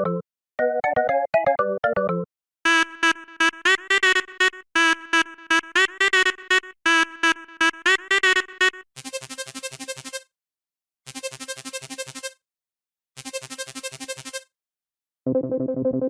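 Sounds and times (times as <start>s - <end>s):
synth ringtone melody: 0.0s - 8.8s
fast pulsing electronic tone: 2.7s - 10.2s.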